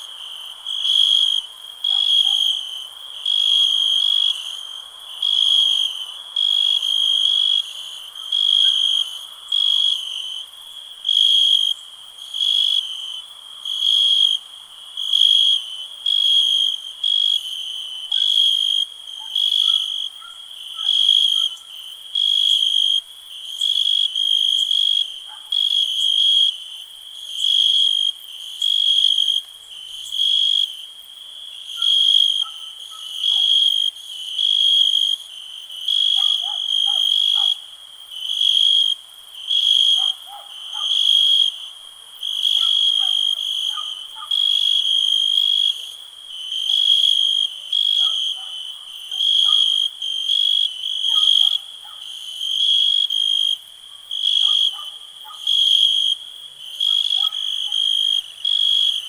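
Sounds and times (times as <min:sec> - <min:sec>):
cricket chirping: 0:00.0 - 0:59.0.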